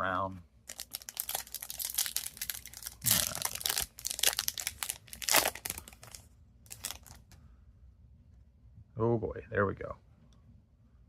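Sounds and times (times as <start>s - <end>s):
loud foil rips: 0.7s - 7.2s
foil wrappers crinkling and tearing: 0.7s - 7.4s.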